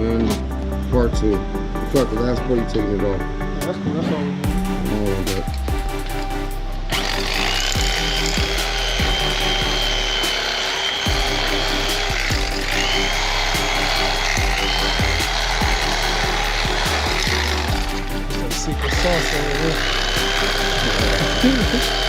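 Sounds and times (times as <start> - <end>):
music with heavy bass beat: 4.5 - 22.0
power tool whining: 5.2 - 22.0.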